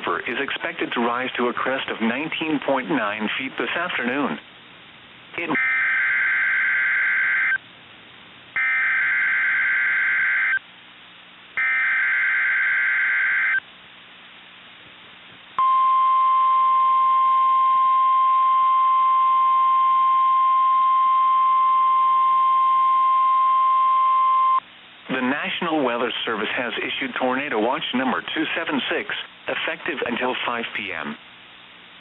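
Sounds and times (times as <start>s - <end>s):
steady warning alarm tone: 5.6s - 7.6s, 8.6s - 10.6s, 11.6s - 13.6s.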